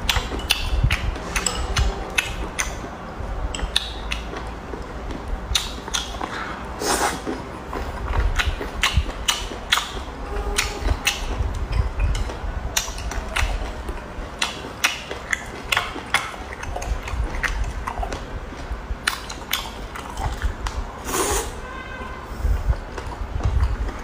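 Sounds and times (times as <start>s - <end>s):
food crunching while chewed: 7.1s - 20.8s.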